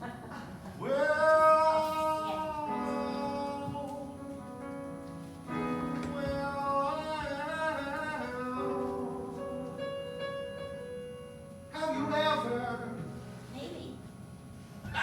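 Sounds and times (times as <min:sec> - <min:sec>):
person singing with vibrato: 0:00.8 - 0:04.2.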